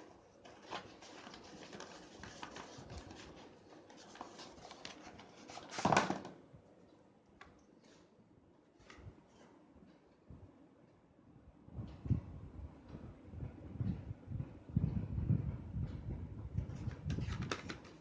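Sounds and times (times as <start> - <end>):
packaging clicks and rustling: 0.4 - 6.3, 17.1 - 18.0.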